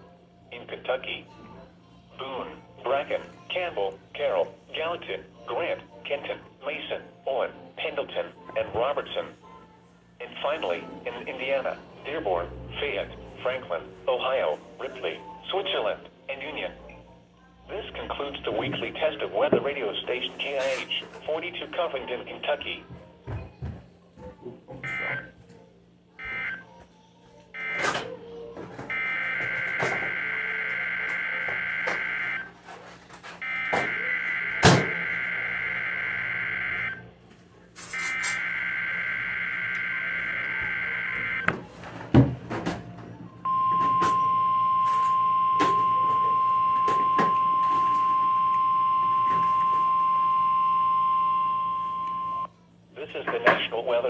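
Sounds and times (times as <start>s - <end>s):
steady warning alarm tone: 24.8s - 25.3s, 26.2s - 26.6s, 27.6s - 28.0s, 28.9s - 32.5s, 33.4s - 37.1s, 37.9s - 41.5s, 43.5s - 52.5s.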